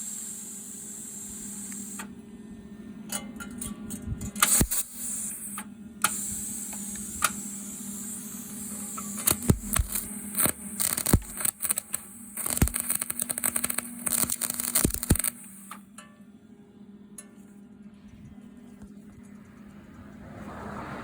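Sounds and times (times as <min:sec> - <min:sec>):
electrical hum: 0:00.0 - 0:21.0
welding arc crackling: 0:04.4 - 0:15.8.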